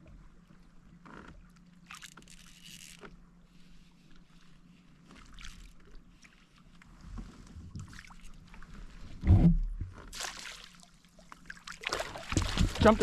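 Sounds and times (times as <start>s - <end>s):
small water splashes: 5.0s - 6.9s, 7.8s - 8.8s, 10.1s - 13.0s
hollow thump against plastic hull: 9.2s - 10.0s
fish splashing into net: 10.1s - 10.9s, 11.7s - 13.0s.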